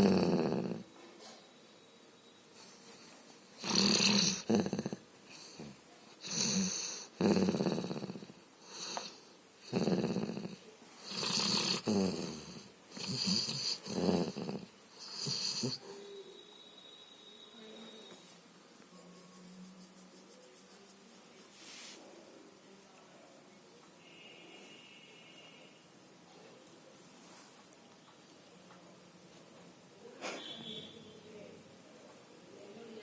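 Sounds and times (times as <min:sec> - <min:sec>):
dog snoring: 0:00.0 - 0:00.9, 0:03.6 - 0:16.0.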